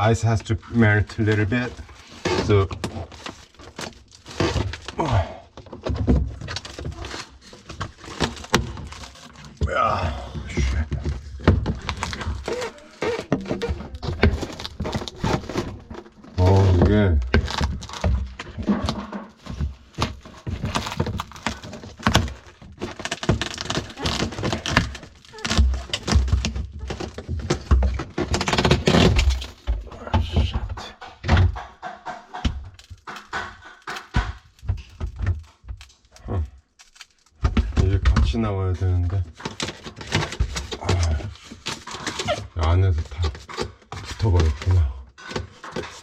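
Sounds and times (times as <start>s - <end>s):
plastic panel clicking and cracking: 1.3s - 9.6s, 10.4s - 30.4s, 31.0s - 38.4s, 39.2s - 42.5s
person grunting: 5.0s - 5.4s, 9.6s - 10.8s.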